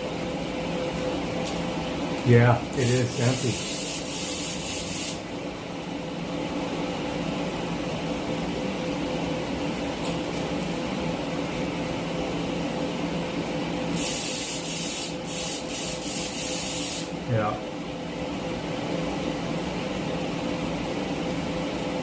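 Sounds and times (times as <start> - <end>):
cooling fan: 0.0 - 22.0
welding machine electrical hum: 0.0 - 22.0
hiss: 2.8 - 5.2, 14.0 - 17.1.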